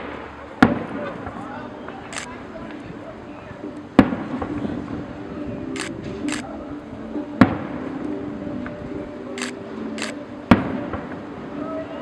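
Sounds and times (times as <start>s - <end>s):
firework bangs: 0.0s - 1.4s, 4.0s - 5.0s, 7.4s - 7.8s, 10.5s - 11.3s
hissing firework crackles: 0.0s - 2.5s.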